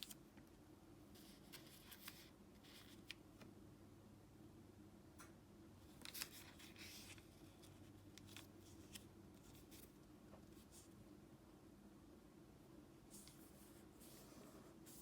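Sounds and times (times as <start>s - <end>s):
low steady hum: 0.0s - 15.0s
paper rustling and crinkling: 1.2s - 3.2s, 5.9s - 10.9s.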